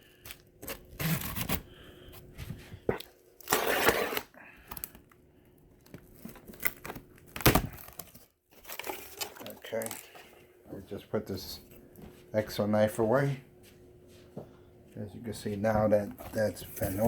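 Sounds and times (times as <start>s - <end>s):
knife slicing cardboard: 3.5s - 4.3s.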